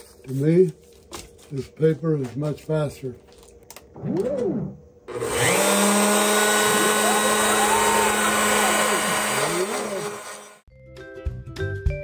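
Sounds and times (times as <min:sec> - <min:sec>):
stepper motors whining: 0:03.9 - 0:10.6
router spindle running: 0:05.1 - 0:10.6.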